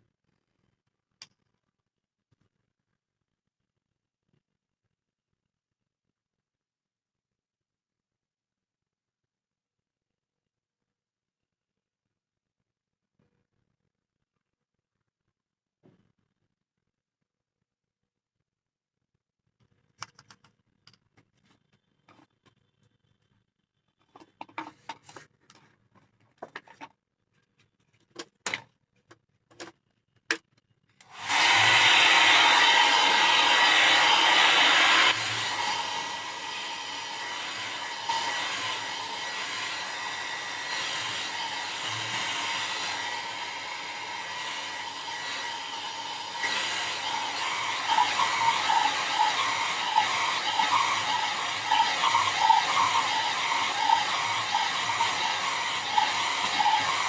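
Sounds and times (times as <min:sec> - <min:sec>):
hair dryer whirring: 0:31.1 - 0:57.0.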